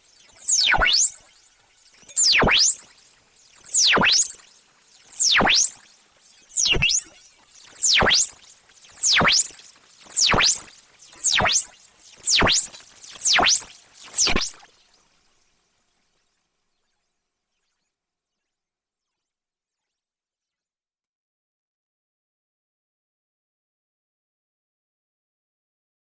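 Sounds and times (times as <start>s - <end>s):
electronic sweeping tone: 0.0s - 14.7s.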